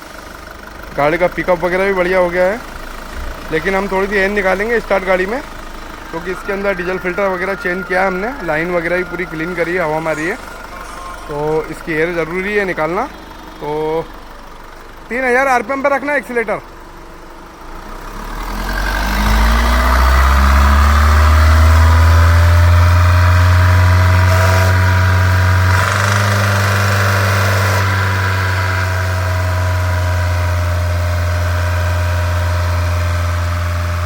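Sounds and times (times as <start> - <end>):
diesel car engine revving: 0.0 - 34.0.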